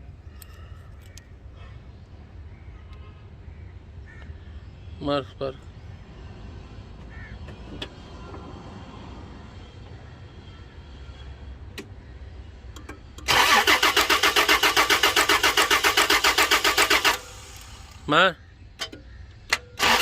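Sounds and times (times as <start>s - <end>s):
engine cranking on starter: 12.8s - 18.1s, 18.8s - 20.0s.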